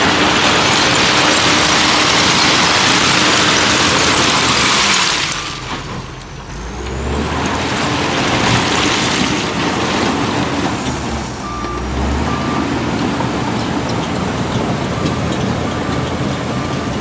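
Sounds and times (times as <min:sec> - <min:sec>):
diesel machinery running under load: 0:00.0 - 0:17.0
short beeps: 0:11.4 - 0:12.7.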